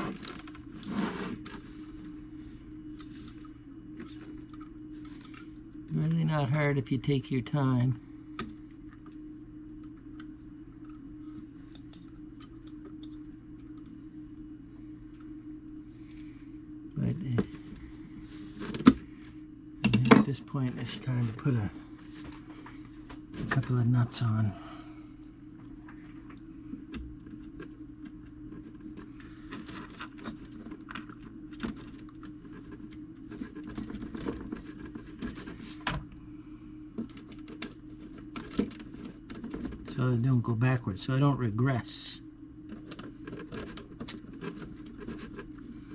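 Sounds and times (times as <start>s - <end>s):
steady low hum: 0.0s - 45.9s.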